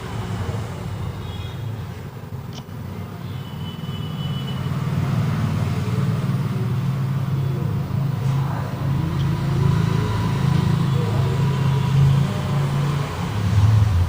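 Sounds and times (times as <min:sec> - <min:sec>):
vehicle engine rumble: 0:04.8 - 0:14.0.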